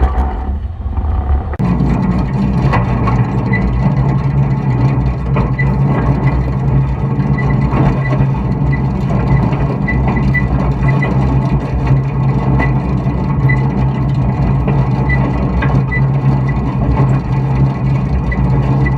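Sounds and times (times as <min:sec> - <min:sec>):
tractor diesel engine running: 0:00.0 - 0:18.9.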